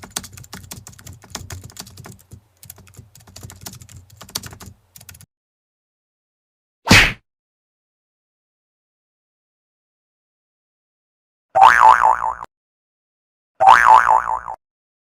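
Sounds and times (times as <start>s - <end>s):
computer keyboard typing: 0.0s - 5.3s.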